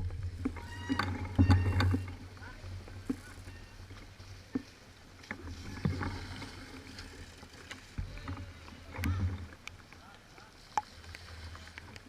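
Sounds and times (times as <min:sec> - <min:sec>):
bike rattling clicks and knocks: 0:00.0 - 0:03.5
bike tyres rumbling on trail: 0:00.0 - 0:10.4.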